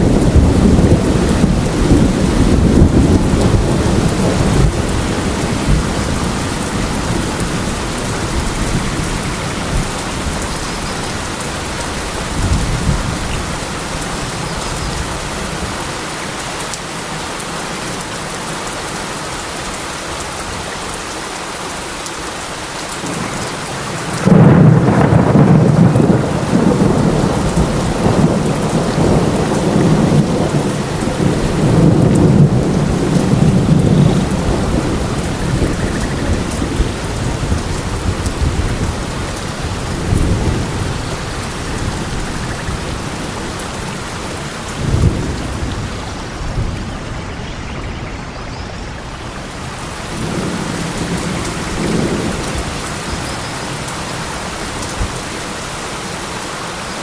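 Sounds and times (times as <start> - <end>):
loud thunder crack: 0.0 - 7.6, 23.9 - 42.4, 44.7 - 47.3
thunder rumbling: 0.0 - 15.7, 23.0 - 55.5
heavy rain: 0.0 - 57.0.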